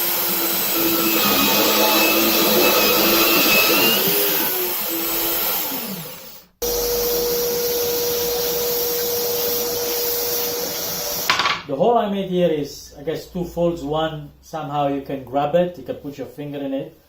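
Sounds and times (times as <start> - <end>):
bandsaw motor running: 0.0 - 11.3
machine humming: 0.0 - 11.3.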